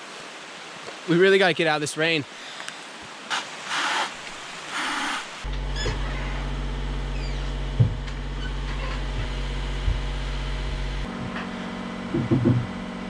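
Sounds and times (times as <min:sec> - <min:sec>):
low mechanical hum: 0:05.4 - 0:13.0
soft knocks: 0:12.2 - 0:12.7.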